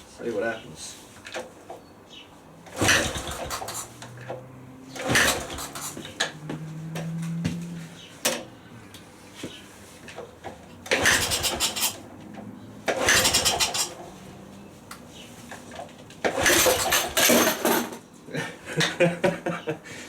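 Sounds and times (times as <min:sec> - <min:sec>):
motorcycle engine cranking: 0:02.6 - 0:08.5, 0:10.1 - 0:14.2, 0:15.5 - 0:18.0.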